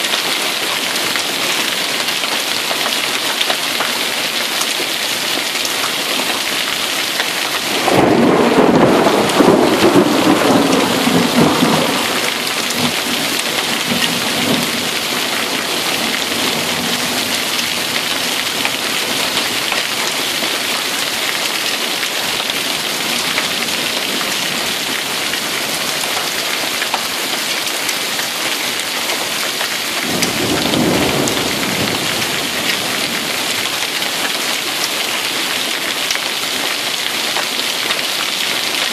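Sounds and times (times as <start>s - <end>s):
heavy rain pouring: 0.0s - 38.9s
thunder rumbling: 7.7s - 20.0s, 30.0s - 33.5s.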